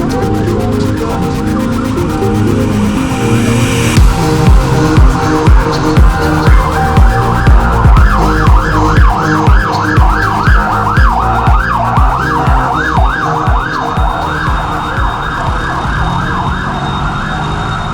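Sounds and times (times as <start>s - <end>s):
siren-like synth wail: 1.3s - 17.9s
kick drum beat: 4.0s - 17.2s.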